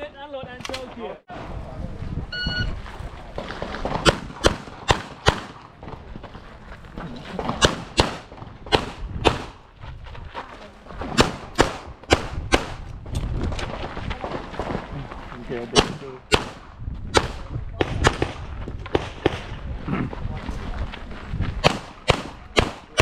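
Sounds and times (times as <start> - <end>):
electronic timer beep: 2.3 - 2.7
handgun shots: 7.6 - 9.5, 21.6 - 23.0.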